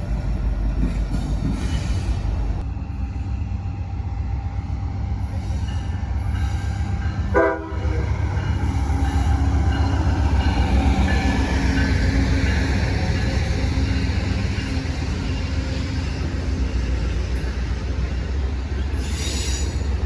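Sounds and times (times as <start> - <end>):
train rumbling past: 0.0 - 20.0
locomotive air horn blast: 7.3 - 8.3.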